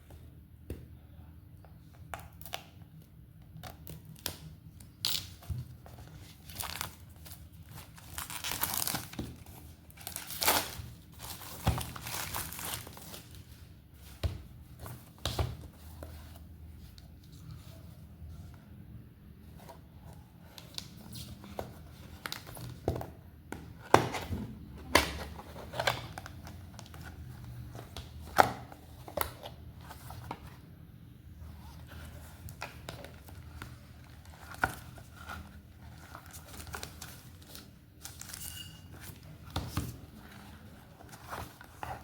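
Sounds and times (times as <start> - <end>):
packaging crinkling and tearing: 7.9 - 9.2, 9.9 - 13.4.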